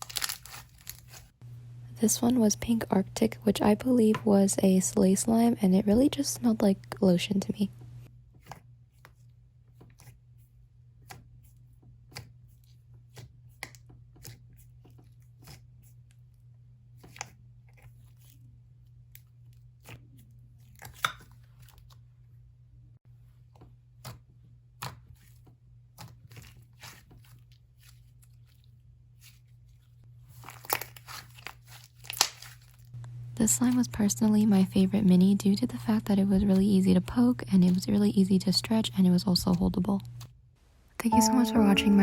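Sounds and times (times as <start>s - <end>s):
faint steady hum: 0.8s - 8.1s, 33.0s - 42.0s.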